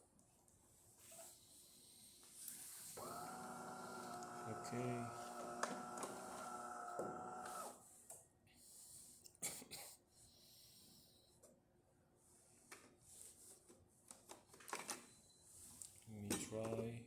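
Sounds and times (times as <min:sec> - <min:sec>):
espresso machine humming: 0:03.0 - 0:07.8.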